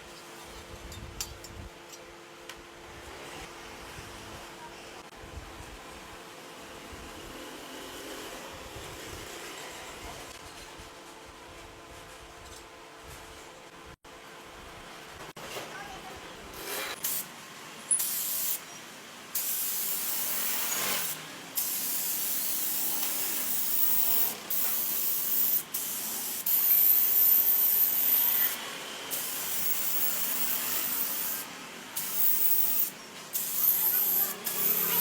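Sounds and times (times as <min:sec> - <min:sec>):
compressed air hissing: 0:18.0 - 0:18.6, 0:19.4 - 0:35.0.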